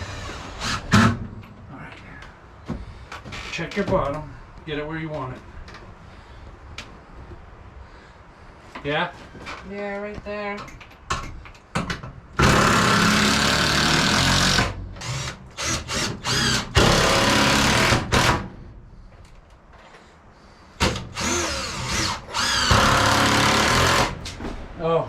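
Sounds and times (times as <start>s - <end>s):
power drill spinning: 12.4s - 18.2s, 21.1s - 24.2s.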